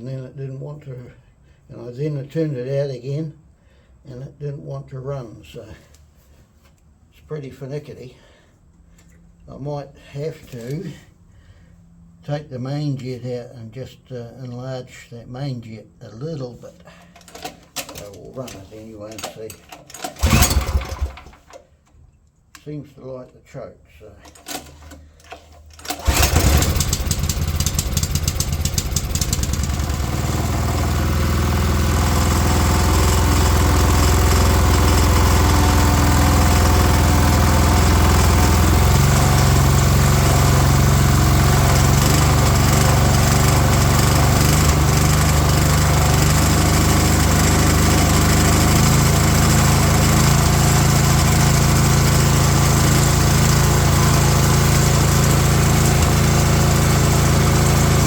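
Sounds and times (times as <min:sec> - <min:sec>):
small petrol engine running: 0:19.9 - 0:21.5, 0:25.8 - 0:58.0.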